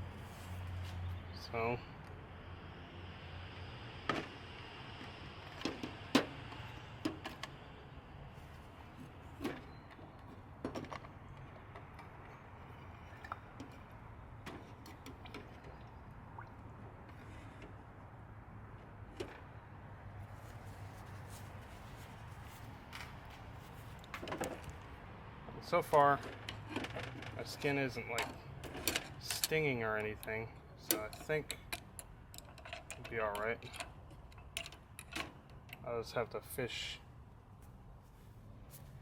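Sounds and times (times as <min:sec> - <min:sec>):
metal parts clicking and knocking: 0:28.2 - 0:35.8.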